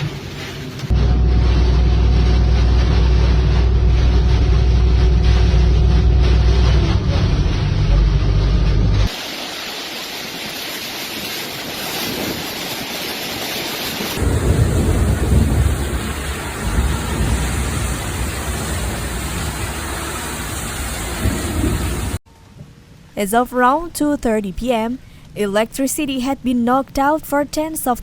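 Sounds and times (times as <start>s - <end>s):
low thunder rumble: 0.0s - 9.1s, 14.1s - 22.2s
heavy rain: 0.0s - 22.2s.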